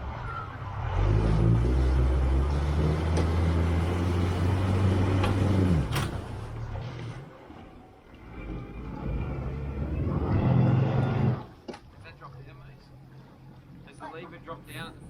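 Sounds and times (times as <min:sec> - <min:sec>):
engine running: 0:00.0 - 0:11.6.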